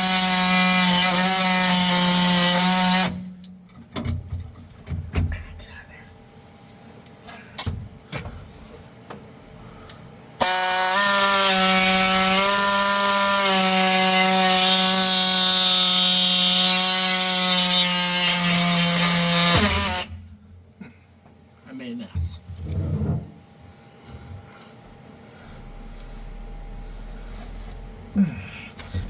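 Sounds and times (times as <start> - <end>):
electric power tool running: 0.0 - 3.2, 10.4 - 17.6.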